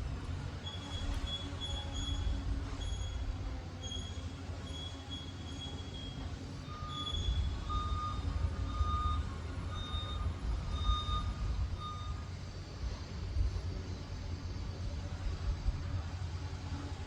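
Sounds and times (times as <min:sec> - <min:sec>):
diesel engine rumbling: 0:00.0 - 0:17.0
reverse alarm beeping: 0:05.2 - 0:12.3.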